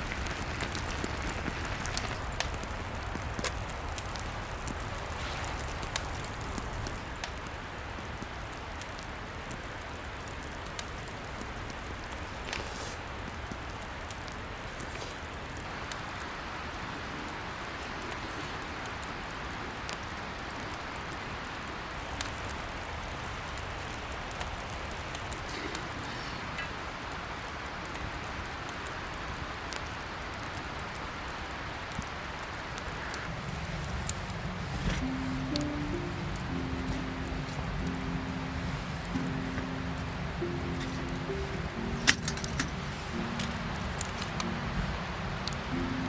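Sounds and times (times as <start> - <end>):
wood fire crackling: 0.0 - 46.0.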